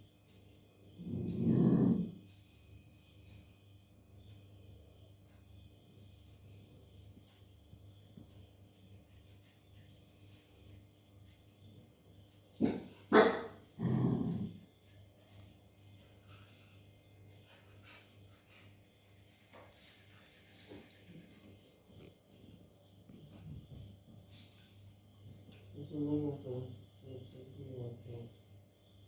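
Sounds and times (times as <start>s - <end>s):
crickets chirping: 0.0s - 29.0s
dog barking: 12.6s - 13.6s.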